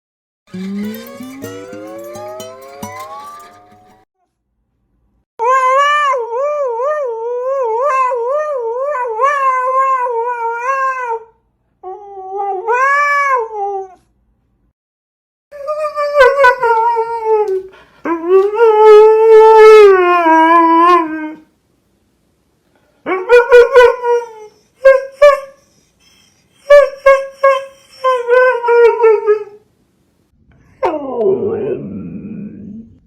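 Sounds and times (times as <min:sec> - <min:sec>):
husky yowling: 0:23.1 - 0:29.6.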